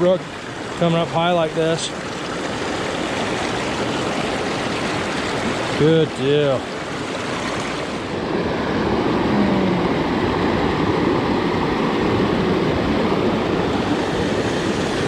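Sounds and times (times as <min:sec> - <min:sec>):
creek rushing over rocks: 0:00.0 - 0:08.2.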